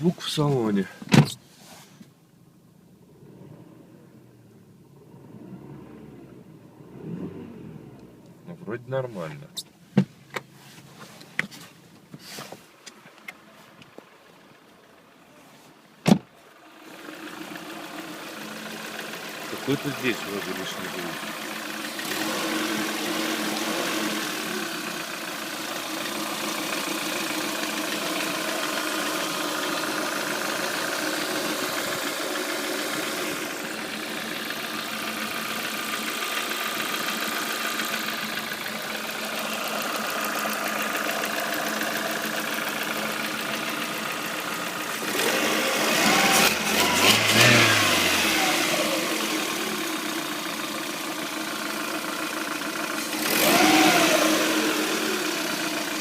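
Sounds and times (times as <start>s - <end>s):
car engine idling and revving: 0.0s - 56.0s
engine knocking: 33.8s - 45.4s, 46.0s - 56.0s.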